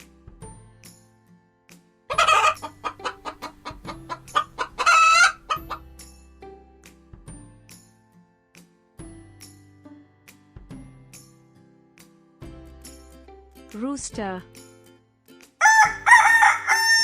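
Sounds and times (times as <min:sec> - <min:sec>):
hen cackling: 0:02.1 - 0:05.8, 0:15.6 - 0:17.0.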